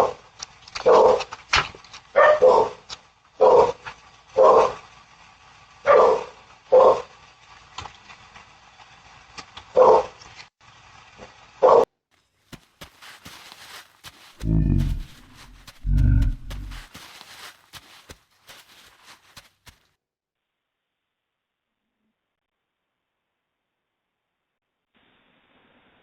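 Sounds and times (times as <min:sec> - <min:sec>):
dog barking: 0:00.8 - 0:01.3, 0:02.2 - 0:02.8, 0:03.4 - 0:03.8, 0:04.4 - 0:04.8, 0:05.8 - 0:07.1, 0:09.8 - 0:10.2, 0:11.6 - 0:11.9.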